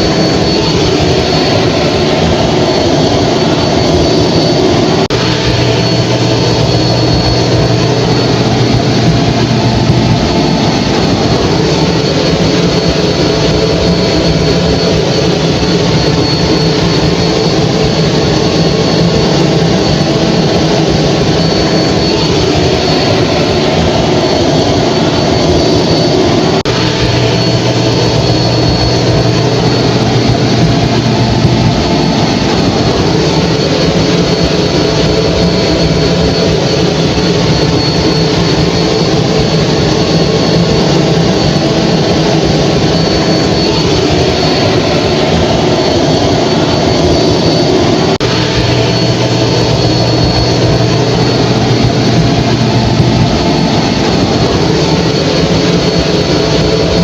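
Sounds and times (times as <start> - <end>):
hair dryer running: 0.0 - 14.9.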